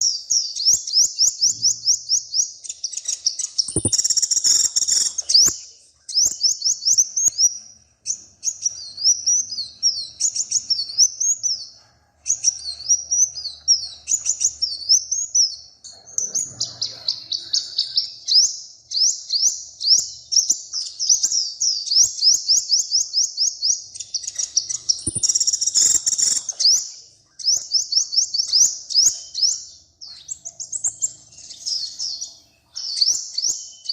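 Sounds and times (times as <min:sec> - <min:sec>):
songbird singing: 0:00.0 - 0:33.9
sharp clicks: 0:03.6 - 0:05.1, 0:24.9 - 0:26.5.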